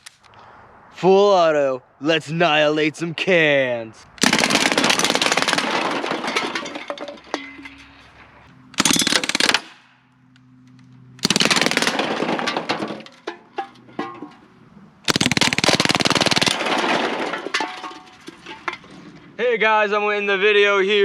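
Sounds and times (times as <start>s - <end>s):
bb rifle firing rapid bursts: 4.2s - 6.0s, 8.8s - 9.8s, 11.2s - 12.4s, 15.1s - 17.2s.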